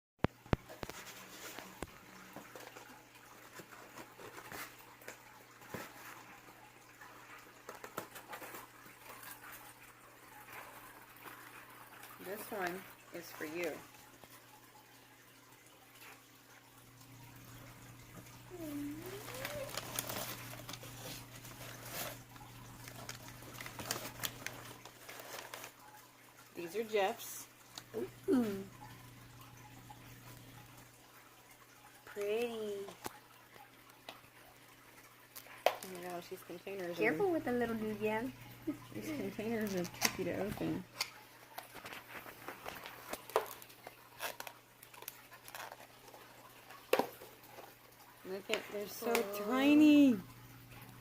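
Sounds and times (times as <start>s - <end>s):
packaging clicks and rustles: 18.6s - 25.8s.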